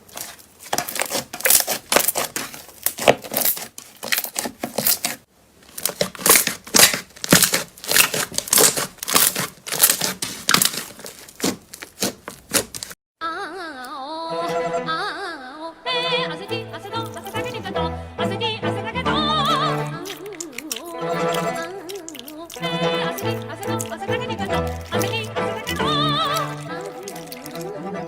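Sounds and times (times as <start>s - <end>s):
slime crackling and popping: 0.0s - 13.0s, 17.0s - 17.6s, 19.5s - 27.8s.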